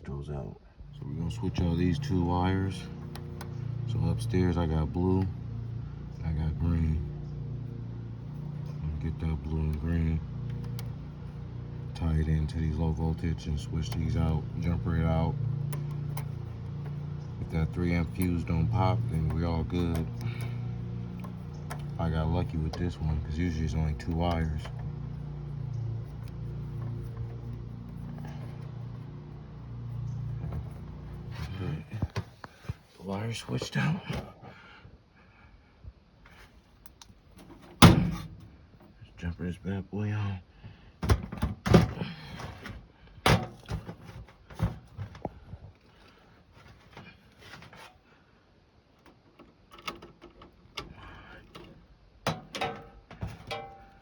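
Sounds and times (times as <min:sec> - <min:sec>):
low mechanical motor hum: 0:00.4 - 0:33.1
handling clicks and knocks: 0:08.4 - 0:29.4, 0:49.0 - 0:54.0.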